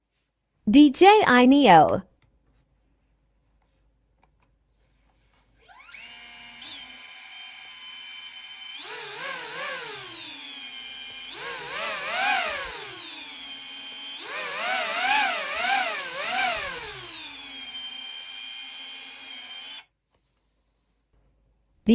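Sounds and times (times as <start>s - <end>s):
drone propellers whining: 8.8s - 19.8s.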